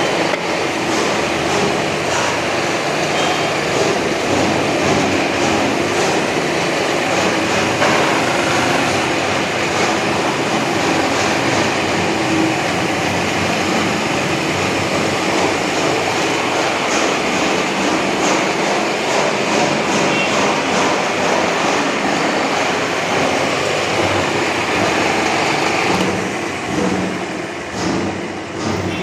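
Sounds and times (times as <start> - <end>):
radial drilling machine running: 0.0 - 18.1.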